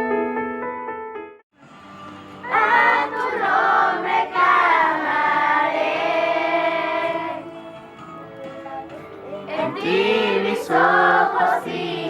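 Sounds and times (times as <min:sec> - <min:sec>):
group of people singing: 0:02.4 - 0:07.6, 0:09.5 - 0:12.0.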